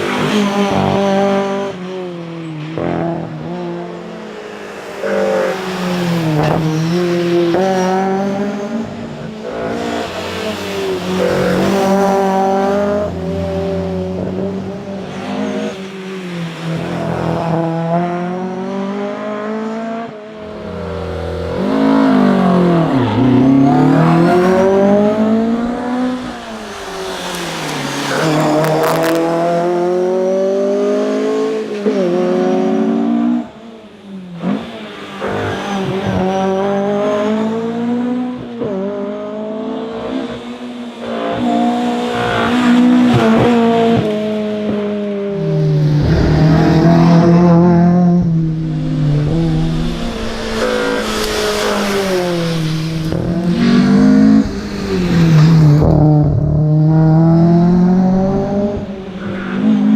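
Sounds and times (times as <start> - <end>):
car engine revving hard: 16.8 - 33.5, 45.6 - 59.9.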